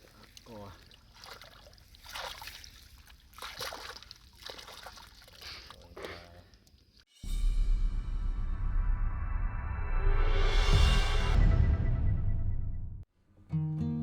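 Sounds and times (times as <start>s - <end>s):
shallow river water splashing: 0.0s - 7.0s.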